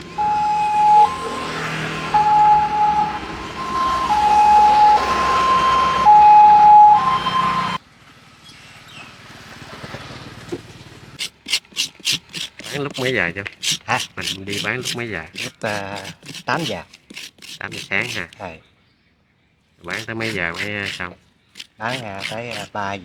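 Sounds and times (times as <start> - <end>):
two-tone electronic siren tone: 0.2 - 7.8.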